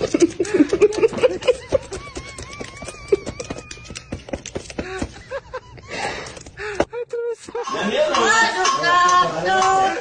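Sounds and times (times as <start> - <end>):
parrot squawky chatter: 1.5 - 4.5.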